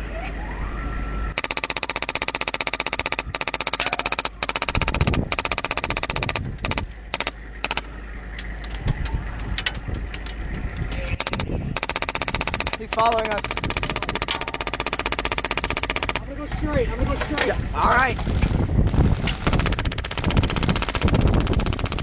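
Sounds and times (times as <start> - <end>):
airsoft gun rapid fire: 1.4 - 7.9, 11.2 - 16.2, 19.4 - 22.0.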